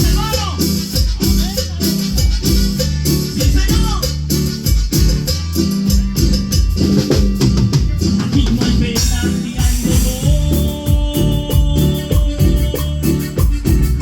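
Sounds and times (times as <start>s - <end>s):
shaker: 0.0s - 7.2s
latin band music: 0.0s - 14.0s.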